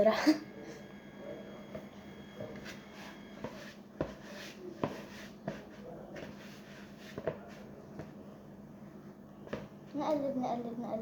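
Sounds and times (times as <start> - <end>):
hands kneading dough: 1.7 - 10.2
dull thumps of dough: 7.1 - 8.2.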